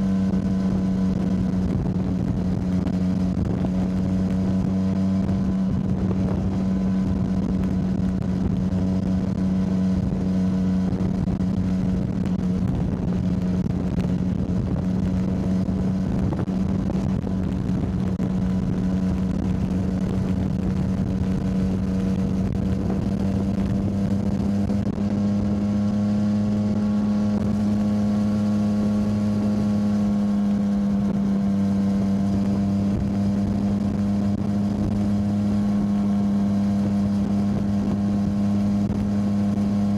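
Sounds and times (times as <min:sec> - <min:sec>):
motorcycle engine cruising: 0:00.0 - 0:39.9.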